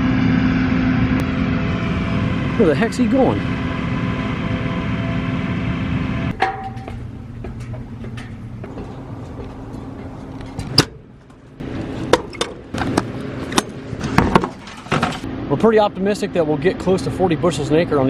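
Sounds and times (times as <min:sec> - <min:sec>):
vehicle engine running: 0:00.0 - 0:18.0.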